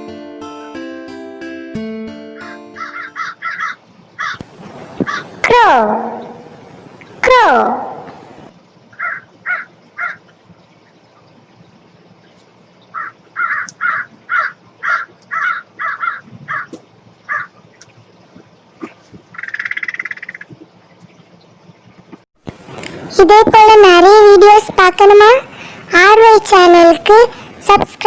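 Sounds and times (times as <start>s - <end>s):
crow cawing: 2.4s - 4.4s, 5.0s - 5.3s, 9.0s - 10.2s, 13.0s - 16.7s, 17.3s - 17.5s.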